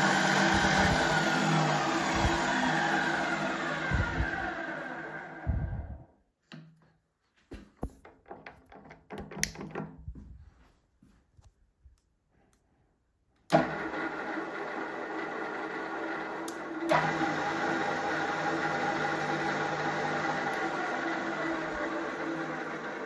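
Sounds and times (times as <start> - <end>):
drill press motor humming: 0.0 - 6.0, 13.5 - 23.0
drill press spinning down: 0.0 - 6.0, 13.5 - 23.0
clicks and clunks: 7.6 - 10.0.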